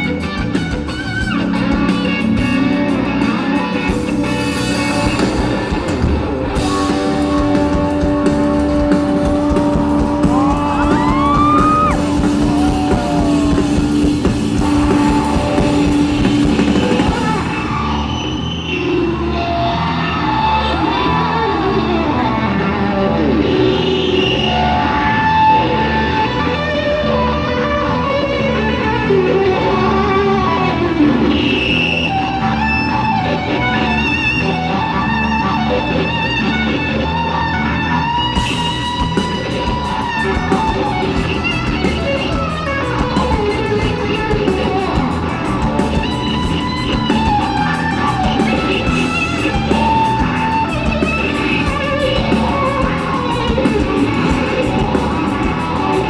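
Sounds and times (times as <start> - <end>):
live rock band playing: 0.0 - 19.6, 20.3 - 56.0
electric guitar lines: 0.0 - 56.0
fast cymbal beat on drums: 3.9 - 17.7, 38.4 - 56.0.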